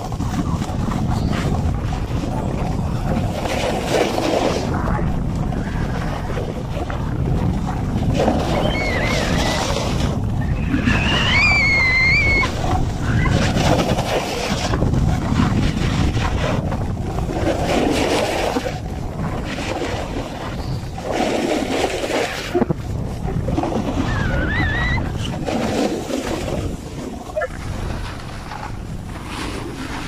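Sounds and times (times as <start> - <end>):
snowboard sliding on snow: 0.0 - 30.0
wind rushing over microphone: 0.0 - 30.0.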